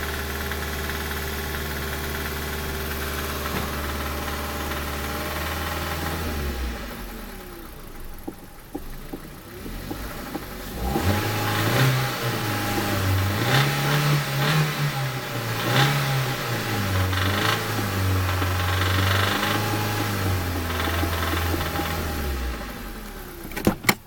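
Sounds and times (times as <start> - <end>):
car engine revving: 0.0 - 23.6
metallic engine knocks: 8.0 - 10.6, 16.8 - 22.5.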